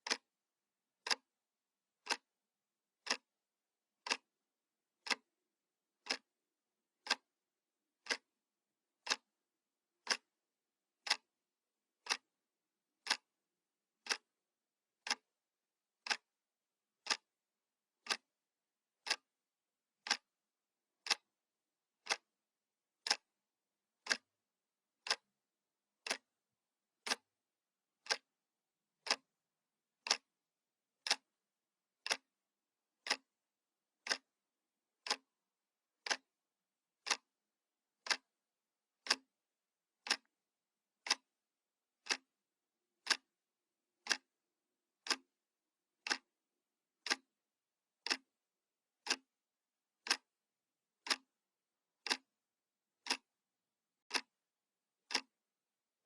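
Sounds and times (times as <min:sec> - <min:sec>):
analog clock ticking: 0:03.0 - 0:03.2, 0:06.0 - 0:06.2, 0:16.0 - 0:16.2, 0:18.0 - 0:18.2, 0:20.0 - 0:20.2, 0:21.0 - 0:21.2, 0:22.0 - 0:22.2, 0:23.0 - 0:23.3, 0:24.0 - 0:24.3, 0:27.0 - 0:27.2, 0:28.0 - 0:28.2, 0:29.0 - 0:29.2, 0:30.0 - 0:30.3, 0:32.0 - 0:32.3, 0:33.0 - 0:33.3, 0:34.0 - 0:34.3, 0:35.0 - 0:35.2, 0:36.0 - 0:36.2, 0:37.0 - 0:37.2, 0:38.0 - 0:38.2, 0:39.0 - 0:39.2, 0:40.0 - 0:40.3, 0:41.0 - 0:41.2, 0:42.0 - 0:42.3, 0:43.0 - 0:43.2, 0:44.0 - 0:44.2, 0:45.0 - 0:45.2, 0:46.0 - 0:46.2, 0:47.0 - 0:47.2, 0:48.0 - 0:48.3, 0:50.0 - 0:50.3, 0:51.0 - 0:51.3, 0:52.0 - 0:52.3, 0:53.0 - 0:53.3, 0:54.1 - 0:54.3, 0:55.1 - 0:55.3.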